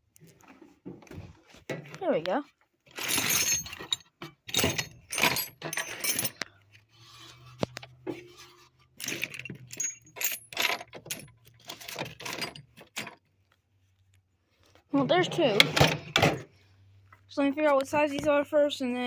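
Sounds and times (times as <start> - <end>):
metal nuts and bolts rattling: 2.9 - 6.4, 9.0 - 13.2.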